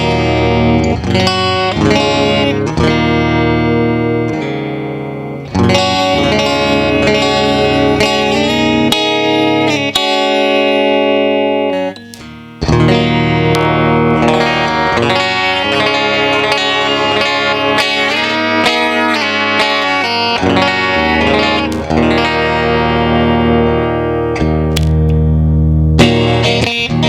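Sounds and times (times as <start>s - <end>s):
electric guitar with effects: 0.0s - 27.0s.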